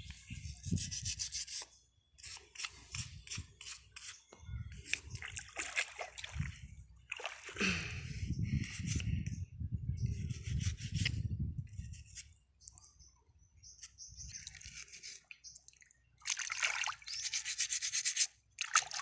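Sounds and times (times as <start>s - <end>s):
water sloshing: 5.0s - 7.7s, 14.4s - 17.6s, 18.6s - 19.0s
brush scrubbing clam shells: 14.6s - 15.3s, 17.1s - 19.0s.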